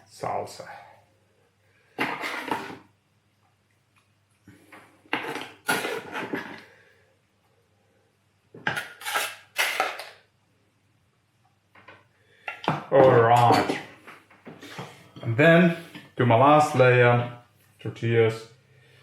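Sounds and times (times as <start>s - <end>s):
utensil scraping and clinking on dish: 5.2s - 6.6s, 8.7s - 10.1s.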